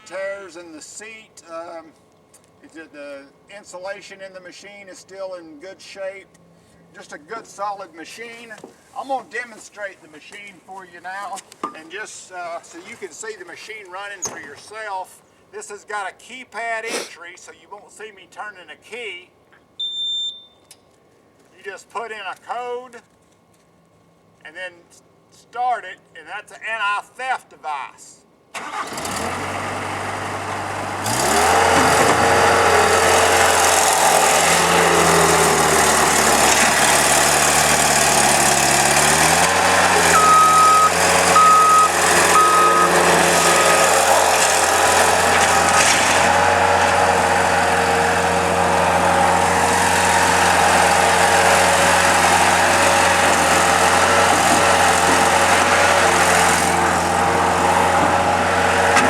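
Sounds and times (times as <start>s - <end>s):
short electronic beeps: 19.8s - 20.7s, 40.1s - 43.0s
diesel engine running: 28.6s - 59.0s.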